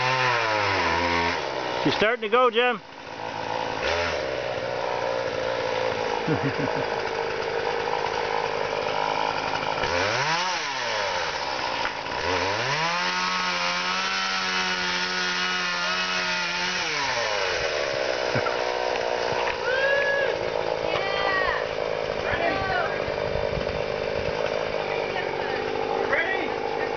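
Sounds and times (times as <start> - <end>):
chainsaw engine revving: 0.0 - 26.9.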